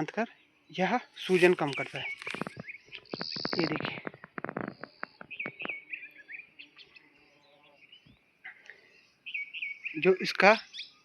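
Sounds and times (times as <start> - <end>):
small birds chirping: 0.0 - 11.0
sharp clicks: 1.3 - 5.8.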